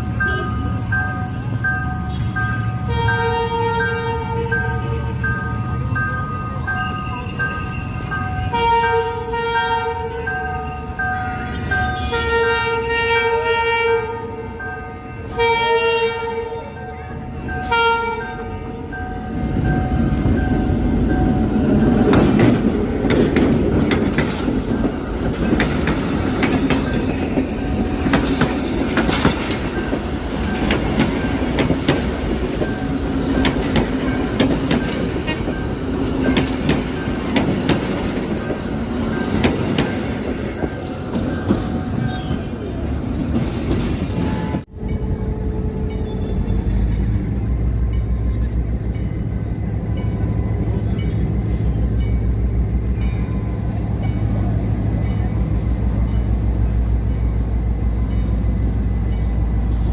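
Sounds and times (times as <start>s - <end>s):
train rumbling: 0.0s - 59.9s
locomotive horn blasts: 0.2s - 0.7s, 2.0s - 5.3s, 8.4s - 10.3s, 11.2s - 18.9s, 44.1s - 46.9s
wheels clicking over rail joints: 20.0s - 44.6s.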